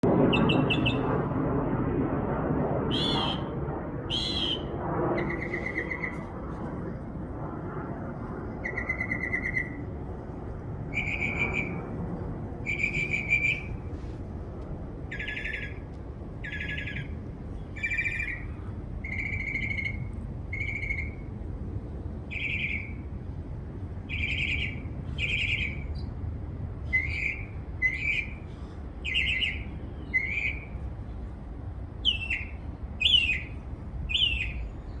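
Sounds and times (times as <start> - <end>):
bird calls: 0.3 - 1.1, 2.9 - 3.5, 4.1 - 6.3, 8.6 - 9.9, 10.9 - 11.8, 12.6 - 13.8, 15.1 - 21.2, 22.3 - 23.0, 24.1 - 26.1, 26.9 - 30.8, 32.0 - 35.0.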